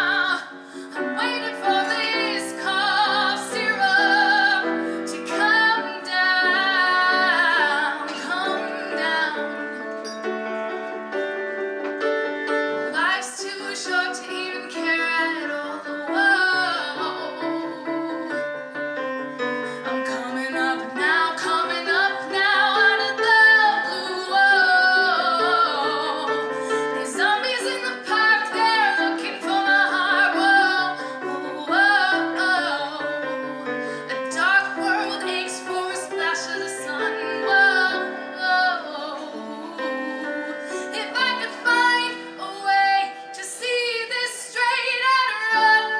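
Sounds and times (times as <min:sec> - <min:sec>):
woman singing a ballad: 0:00.0 - 0:10.1, 0:12.8 - 0:45.9
piano accompaniment: 0:00.0 - 0:45.9.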